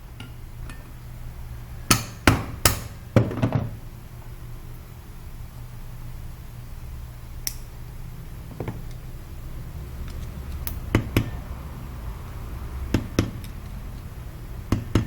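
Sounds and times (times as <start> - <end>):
steady low hum: 0.0 - 15.0
tool tapping on metal: 1.9 - 3.7, 10.7 - 11.4, 12.9 - 13.7, 14.7 - 15.0.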